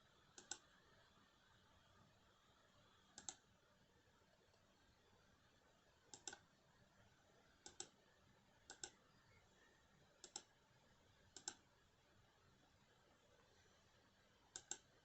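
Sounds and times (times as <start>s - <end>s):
faint sharp clicks in pairs: 3.2s - 3.4s, 6.1s - 6.5s, 7.6s - 8.0s, 8.7s - 9.0s, 10.2s - 10.5s, 11.4s - 11.6s, 14.5s - 14.9s.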